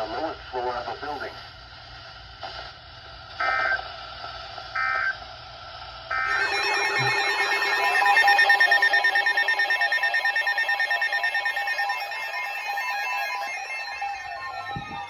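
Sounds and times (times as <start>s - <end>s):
weather alert radio beeps: 6.1s - 15.0s
falling tone sweep: 6.3s - 15.0s
warbling tone: 6.3s - 15.0s.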